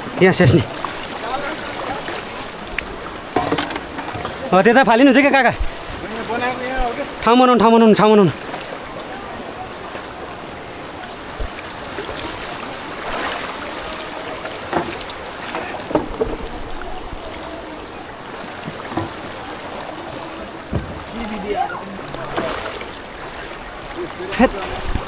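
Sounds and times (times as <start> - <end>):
rushing river water: 0.0 - 25.0
short knocks: 20.6 - 22.8.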